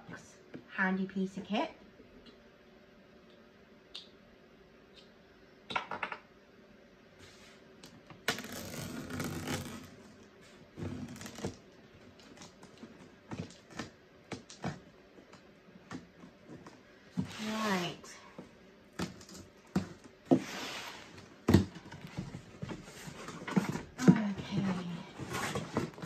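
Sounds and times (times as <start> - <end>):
cardboard scraping and rustling: 19.8 - 26.0.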